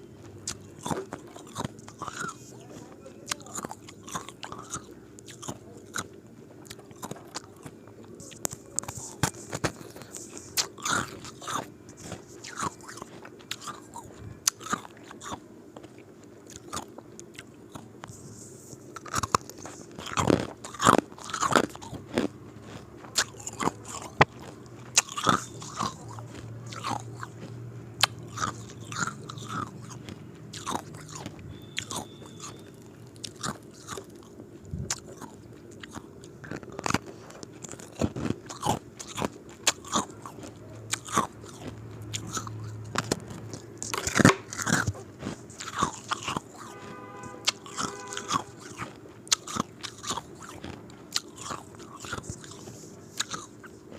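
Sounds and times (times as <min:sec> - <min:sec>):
ice cubes crunched by teeth: 0:19.0 - 0:27.3.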